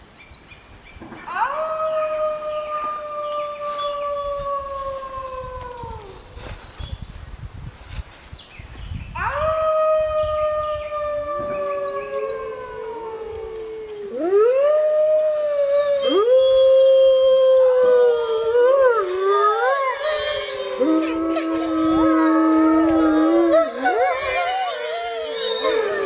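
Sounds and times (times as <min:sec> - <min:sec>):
canids howling: 0:09.2 - 0:26.0.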